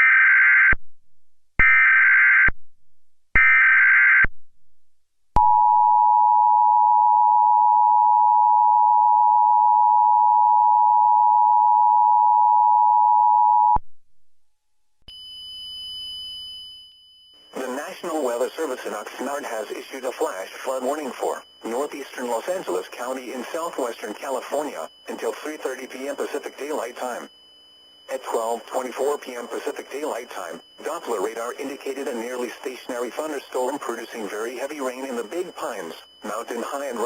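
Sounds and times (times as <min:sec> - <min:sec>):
digital data tone bursts: 0:17.3 - 0:37.0
faint high-pitched hum: 0:17.4 - 0:37.0
two-tone attention signal: 0:28.1 - 0:37.0.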